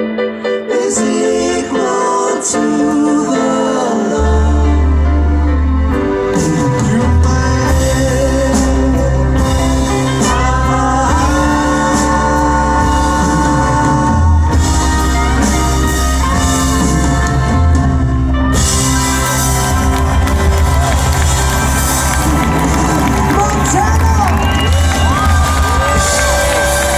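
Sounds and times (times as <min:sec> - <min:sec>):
person singing: 0:00.0 - 0:17.6
live band music: 0:00.0 - 0:26.9.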